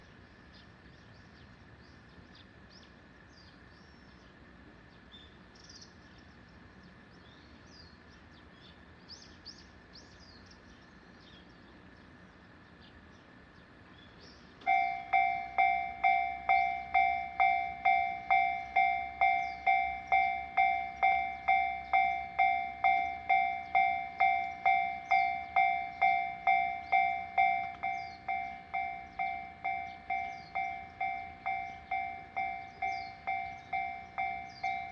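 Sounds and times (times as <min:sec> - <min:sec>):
level crossing warning bell: 0:14.6 - 0:34.9.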